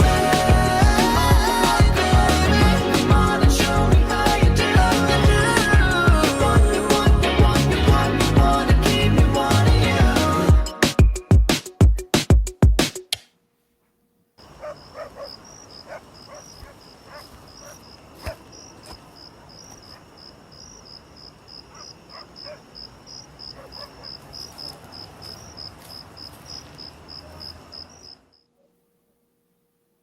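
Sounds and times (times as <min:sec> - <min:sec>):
crickets chirping: 0:14.4 - 0:28.7.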